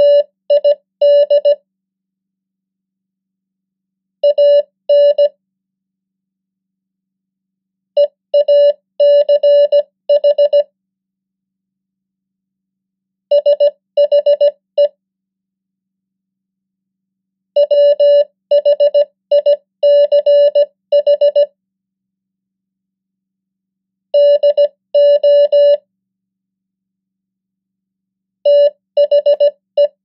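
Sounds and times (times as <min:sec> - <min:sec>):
morse code beeps: 0:00.0 - 0:01.6, 0:04.2 - 0:05.3, 0:08.0 - 0:10.7, 0:13.3 - 0:14.9, 0:17.6 - 0:21.5, 0:24.2 - 0:25.8, 0:28.5 - 0:30.0.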